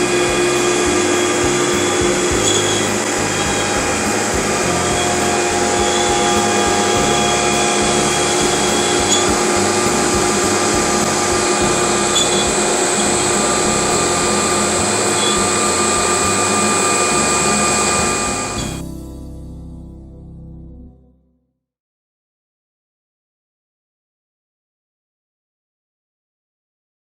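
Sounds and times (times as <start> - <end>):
router spindle whine: 0.0 - 18.8
rushing noise of cutting wood: 0.0 - 18.8.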